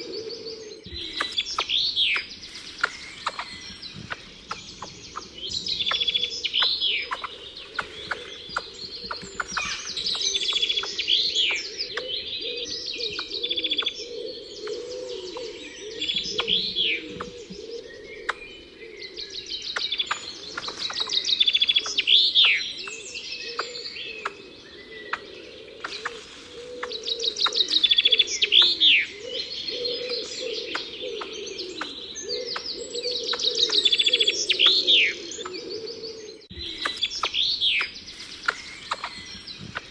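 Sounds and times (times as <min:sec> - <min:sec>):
warbling bird chorus: 0:00.0 - 0:39.9
sharp bird ticks: 0:01.0 - 0:12.1, 0:19.6 - 0:24.4, 0:26.8 - 0:28.8, 0:30.2 - 0:34.8, 0:36.7 - 0:39.9.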